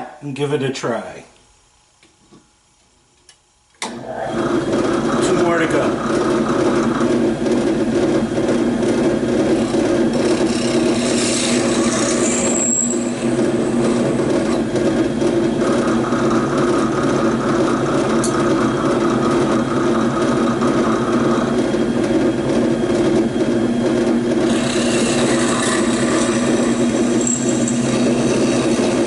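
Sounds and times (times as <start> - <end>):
electric drill drilling plastic: 24.5 - 29.0.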